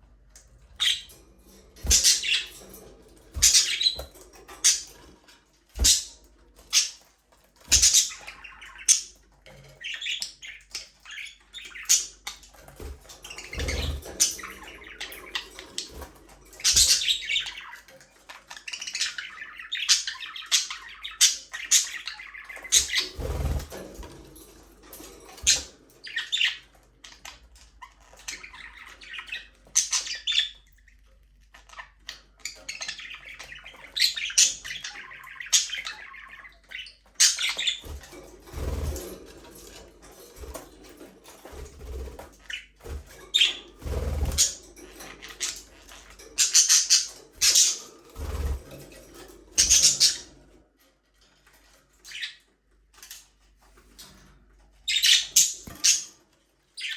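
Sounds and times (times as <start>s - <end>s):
budgerigars chirping: 1.8s - 2.6s, 3.4s - 5.0s, 5.8s - 7.0s, 7.7s - 12.4s, 13.3s - 17.9s, 18.5s - 23.7s, 31.6s - 39.1s, 41.6s - 48.6s, 49.6s - 50.4s, 54.9s - 56.1s.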